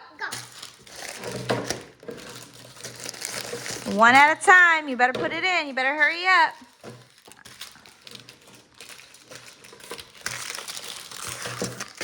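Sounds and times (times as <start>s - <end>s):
snack packages crinkling: 0.2s - 5.1s, 5.8s - 12.0s.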